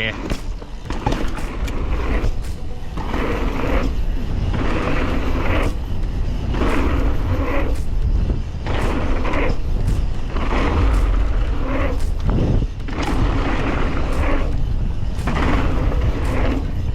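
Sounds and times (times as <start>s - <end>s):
bike tyres on dirt: 0.0s - 16.9s
wind rumbling on microphone: 0.0s - 16.9s.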